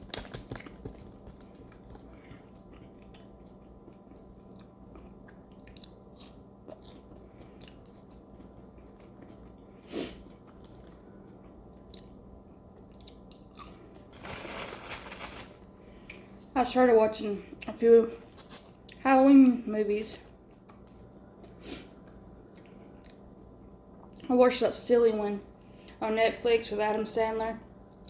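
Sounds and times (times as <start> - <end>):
person chewing food: 0.0 - 14.1, 20.3 - 23.4.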